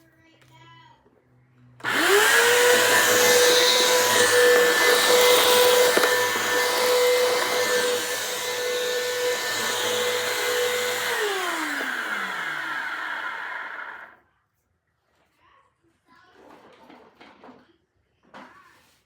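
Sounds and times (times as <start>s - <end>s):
vacuum cleaner whining: 1.8s - 14.2s.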